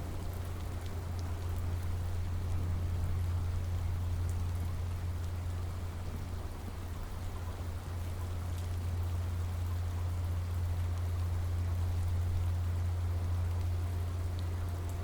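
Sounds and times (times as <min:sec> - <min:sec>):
constant low rumble: 0:00.0 - 0:15.0
raindrops ticking: 0:00.0 - 0:15.0
steady rain falling: 0:00.0 - 0:15.0.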